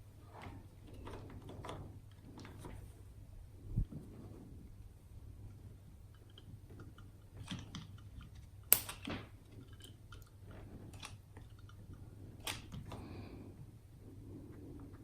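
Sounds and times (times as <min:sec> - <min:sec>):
sharp click: 0:08.7 - 0:09.1.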